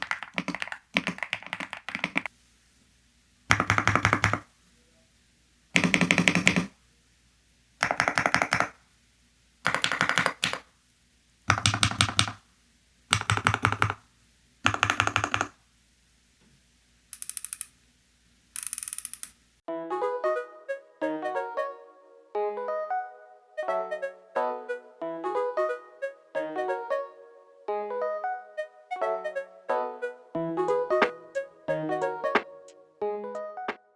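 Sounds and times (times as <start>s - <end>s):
mechanical keyboard typing: 0.0s - 2.3s, 3.5s - 4.4s, 5.8s - 6.7s, 7.8s - 8.8s, 9.7s - 10.6s, 11.5s - 12.4s, 13.1s - 14.0s, 14.6s - 15.6s, 17.2s - 17.7s, 18.6s - 19.4s.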